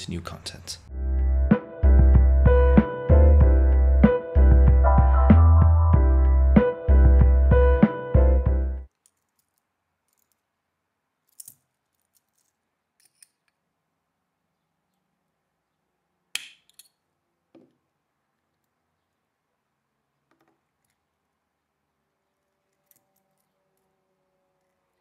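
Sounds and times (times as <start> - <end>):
music: 0.9 - 8.9.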